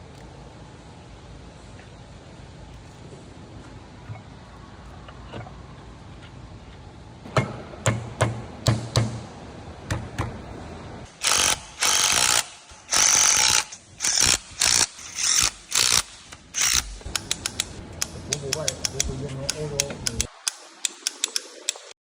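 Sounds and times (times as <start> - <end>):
hand ratchet clicking: 11.2 - 21.9.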